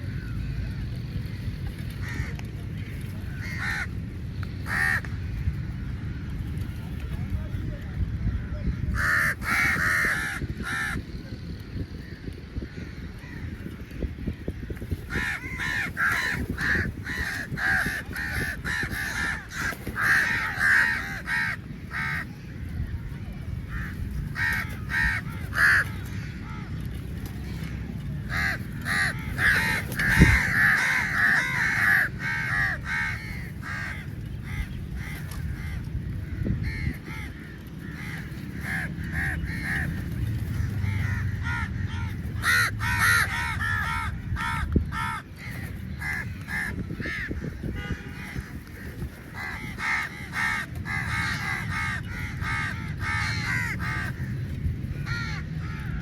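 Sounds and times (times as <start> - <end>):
crows cawing: 2.0 - 2.4, 3.3 - 5.2, 8.8 - 11.1, 14.5 - 22.6, 23.7 - 26.8, 28.2 - 48.6, 49.3 - 56.0.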